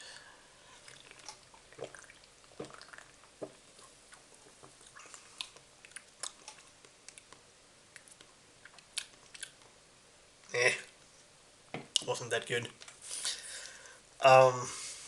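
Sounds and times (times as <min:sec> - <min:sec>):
person gulping a drink: 0:00.8 - 0:07.2
mouth clicks and lip smacks: 0:03.8 - 0:09.7.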